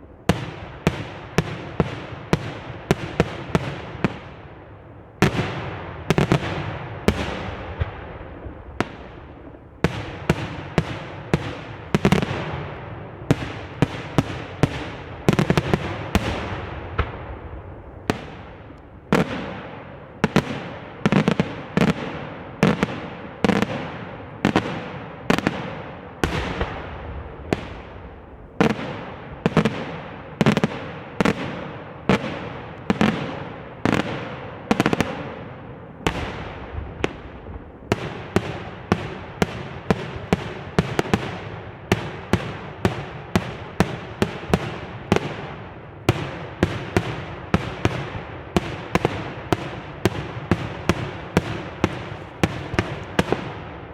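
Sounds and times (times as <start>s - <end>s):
fireworks bangs with echoes: 0.0s - 53.9s.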